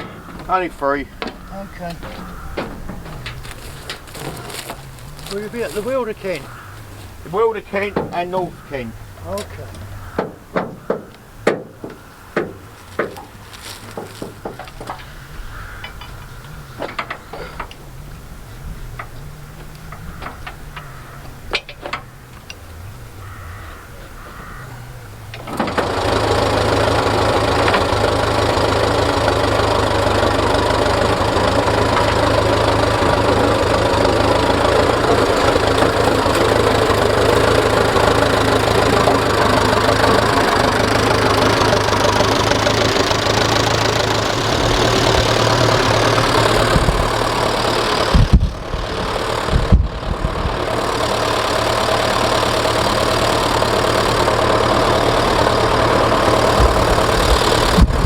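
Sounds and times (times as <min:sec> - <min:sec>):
tractor engine idling: 0:00.0 - 0:58.0
knocks: 0:07.9 - 0:08.4, 0:09.7 - 0:15.2.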